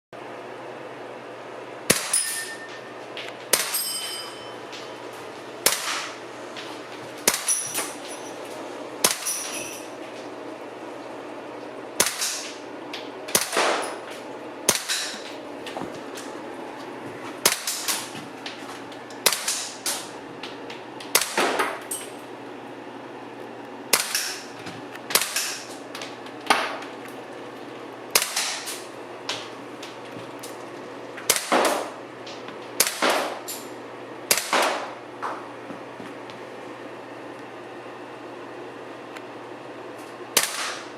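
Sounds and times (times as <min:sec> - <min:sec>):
airsoft rifle shots: 0:01.9 - 0:02.3, 0:05.6 - 0:06.2, 0:07.2 - 0:07.6, 0:12.0 - 0:12.6, 0:13.3 - 0:14.0, 0:14.7 - 0:15.2, 0:17.4 - 0:18.1, 0:19.2 - 0:20.1, 0:21.1 - 0:21.7, 0:23.9 - 0:24.5, 0:25.1 - 0:25.7, 0:28.1 - 0:28.8, 0:31.3 - 0:31.9, 0:32.8 - 0:33.4, 0:34.3 - 0:35.0, 0:40.4 - 0:40.9.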